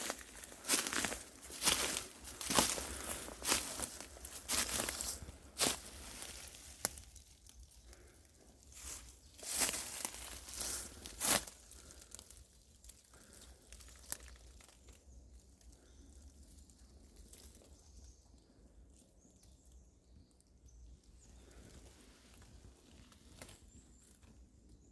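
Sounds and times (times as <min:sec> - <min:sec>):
crackling rustle: 0:00.0 - 0:19.0.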